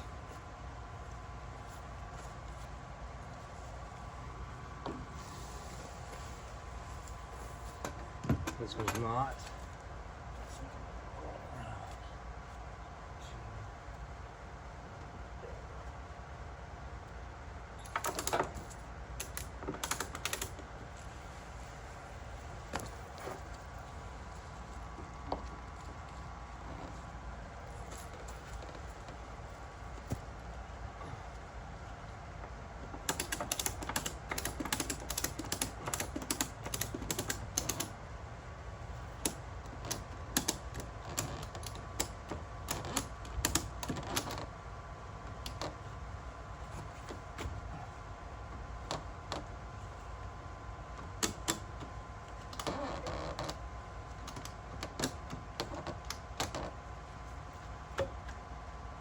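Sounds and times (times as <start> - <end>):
faint steady hum: 0.0 - 59.0
tools and parts clicking and knocking: 17.8 - 20.6, 33.0 - 38.0, 39.2 - 44.4, 51.2 - 52.8.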